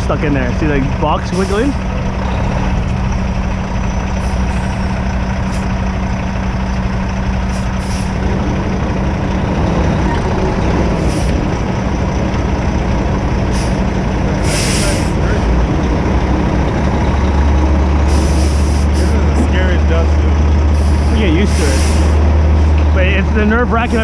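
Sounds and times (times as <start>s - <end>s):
diesel truck engine running: 0.0s - 24.0s
air hissing: 7.5s - 8.2s, 13.4s - 15.2s, 20.7s - 22.2s.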